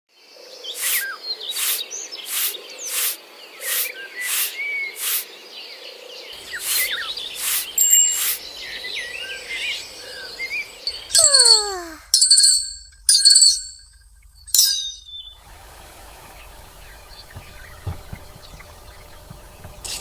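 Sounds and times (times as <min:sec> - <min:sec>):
short sharp insect-like chirps: 0:06.4 - 0:11.2
birds chirping and singing: 0:06.4 - 0:11.8, 0:14.2 - 0:20.0.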